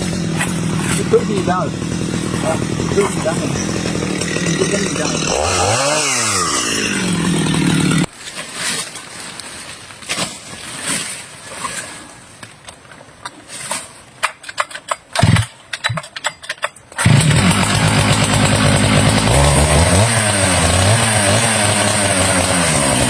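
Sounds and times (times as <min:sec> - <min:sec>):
chainsaw engine running: 0:00.0 - 0:08.1, 0:15.2 - 0:15.5, 0:17.0 - 0:23.0
small engine running: 0:00.0 - 0:08.1, 0:17.0 - 0:23.0.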